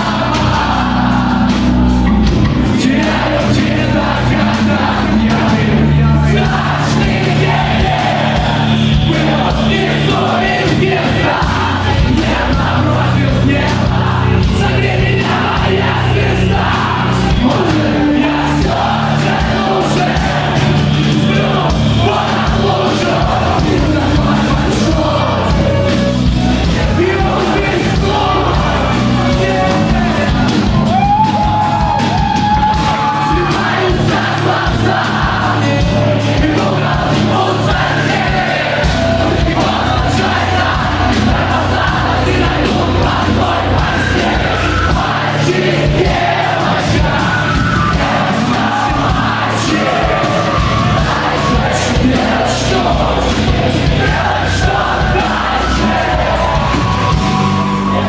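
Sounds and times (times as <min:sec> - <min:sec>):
crowd yelling along: 0:00.0 - 0:58.0
live rock band: 0:00.0 - 0:58.0.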